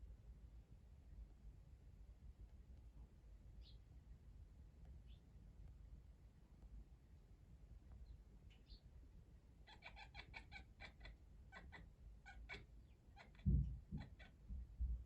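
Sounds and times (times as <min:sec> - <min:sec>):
cat chattering: 0:09.7 - 0:14.4
loud low thump: 0:13.4 - 0:15.0.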